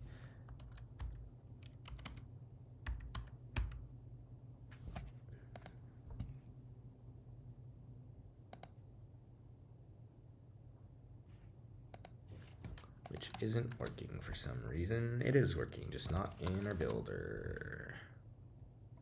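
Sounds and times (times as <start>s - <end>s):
keyboard typing: 0.5s - 3.9s, 4.8s - 6.3s, 11.9s - 14.2s, 15.9s - 17.1s.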